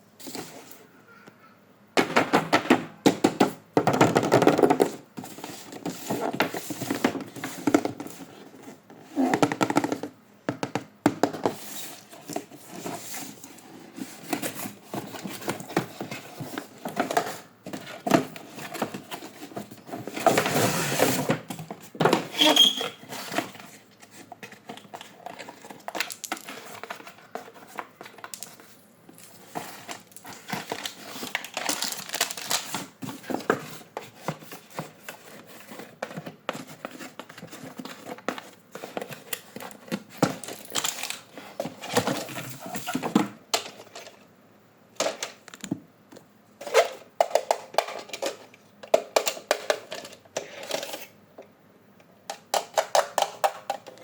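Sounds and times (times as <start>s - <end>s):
packaging crinkling: 24.1s - 33.5s.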